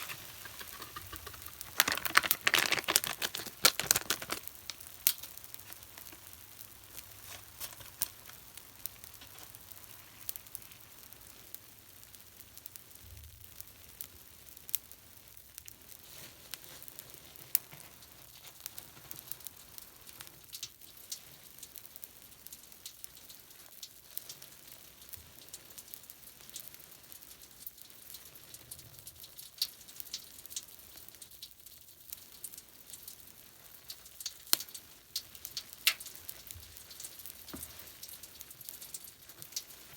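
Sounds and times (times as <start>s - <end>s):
foam bubbles popping: 0.0s - 10.6s.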